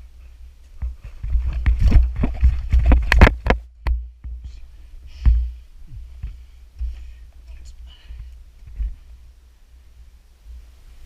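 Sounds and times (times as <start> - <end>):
low rumble of handling noise: 0.0 - 11.0
knocks and scrapes on rock: 0.8 - 4.6.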